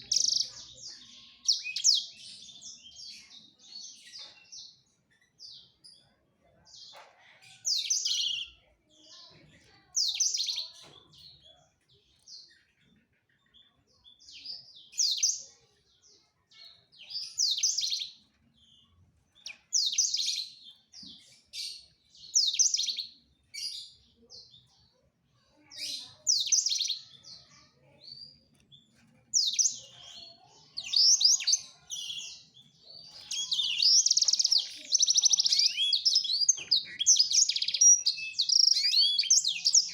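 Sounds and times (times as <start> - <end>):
canary singing: 0.0 - 5.9, 7.5 - 9.2, 9.9 - 11.3, 16.8 - 24.7, 25.8 - 39.9.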